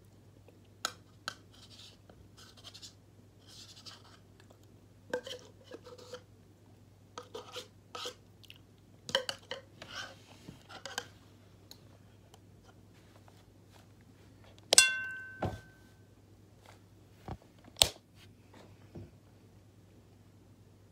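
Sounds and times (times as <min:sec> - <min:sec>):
sharp ringing clink: 0:14.8 - 0:15.9.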